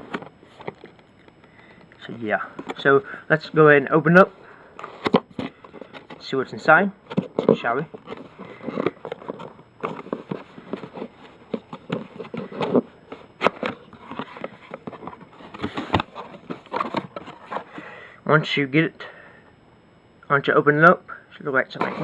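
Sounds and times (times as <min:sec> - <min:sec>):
cardboard box being opened: 0:07.0 - 0:17.8.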